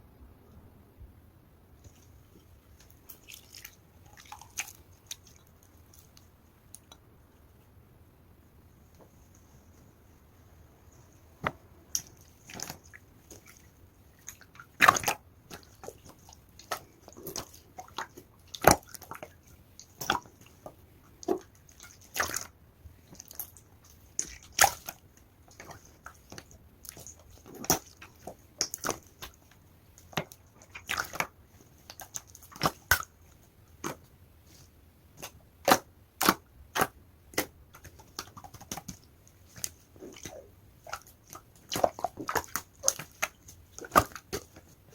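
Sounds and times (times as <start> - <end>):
slime popping and squelching: 11.9 - 20.5, 35.2 - 44.8.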